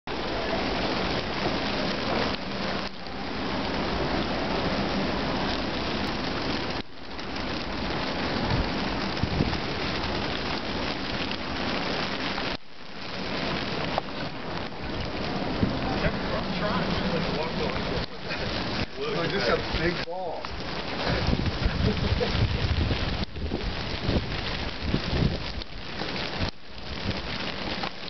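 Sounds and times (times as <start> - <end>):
wind-driven snow hissing: 13.0 - 27.9.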